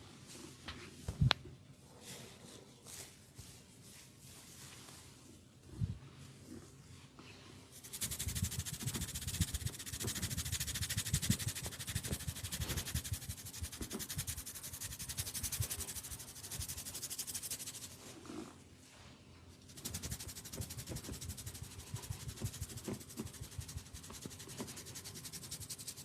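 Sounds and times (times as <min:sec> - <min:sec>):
hands rubbing in massage: 0:07.8 - 0:18.5.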